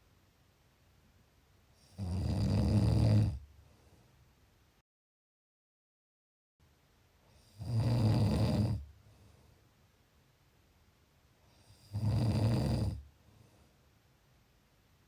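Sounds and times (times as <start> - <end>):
person snoring: 1.8 - 3.4, 7.5 - 8.9, 11.7 - 13.0.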